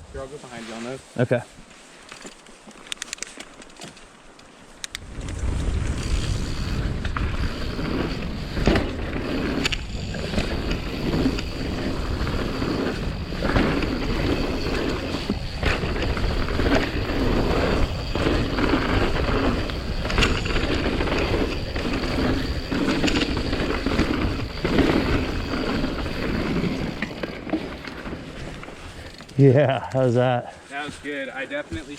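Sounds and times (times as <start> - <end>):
bike tyres rolling over dirt: 0.1 - 31.9
bike knocking and rattling: 2.0 - 29.7, 30.8 - 31.9
wind buffeting microphone: 4.9 - 28.8.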